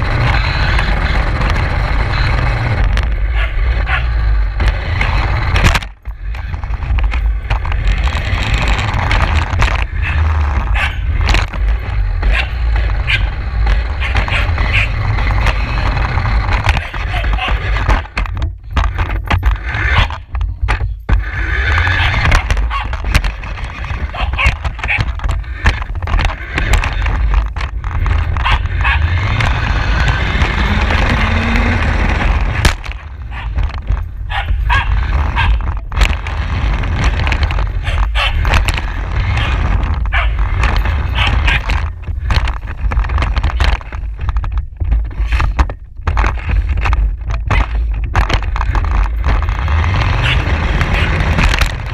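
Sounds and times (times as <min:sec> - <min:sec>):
rc car rattling and rumbling: 0:00.0 - 0:51.9
dog barking: 0:03.3 - 0:04.1, 0:10.0 - 0:11.0, 0:12.2 - 0:13.3, 0:14.0 - 0:14.9, 0:19.9 - 0:20.1, 0:22.0 - 0:22.9, 0:24.1 - 0:25.0, 0:28.4 - 0:29.0, 0:34.3 - 0:35.6, 0:37.8 - 0:38.4, 0:40.1 - 0:40.4, 0:41.2 - 0:41.6, 0:50.2 - 0:51.2.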